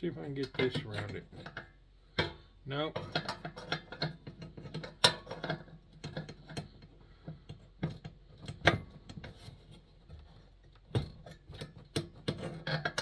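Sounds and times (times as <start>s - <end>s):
metallic clicks and knocks: 0.4s - 6.9s.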